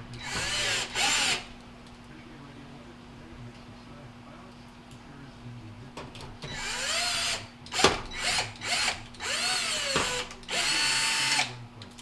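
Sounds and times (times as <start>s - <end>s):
power drill driving screws: 0.2s - 1.5s, 6.5s - 11.6s.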